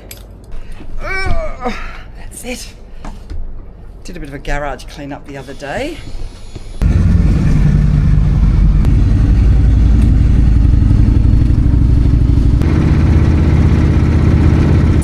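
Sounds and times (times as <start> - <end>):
motorcycle engine running: 6.8 - 15.0.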